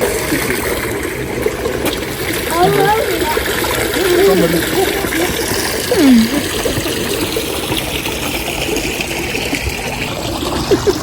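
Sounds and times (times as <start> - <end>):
running water: 0.0 - 11.0
faint voice: 2.5 - 6.4.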